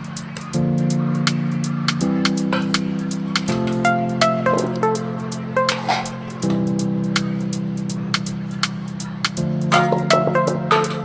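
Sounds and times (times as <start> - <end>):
plucked guitar music with beat: 2.0 - 7.6, 9.7 - 11.0.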